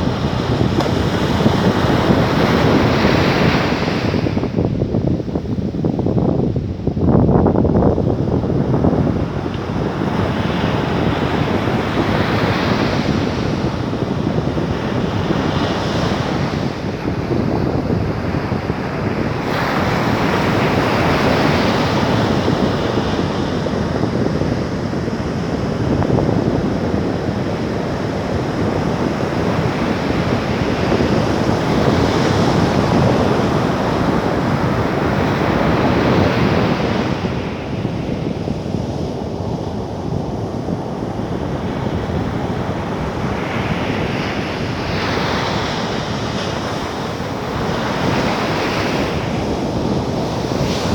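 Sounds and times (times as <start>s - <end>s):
ocean surf breaking: 0.0s - 4.7s, 39.7s - 50.9s
wind on microphone: 0.0s - 50.9s.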